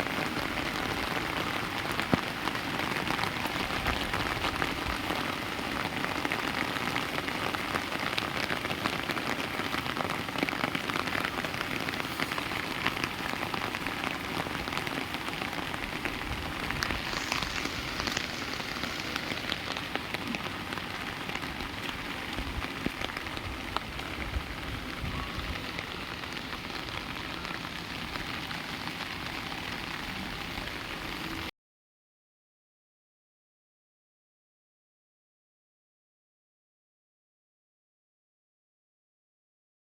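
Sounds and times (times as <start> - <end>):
heavy rain falling: 0.0 - 31.5.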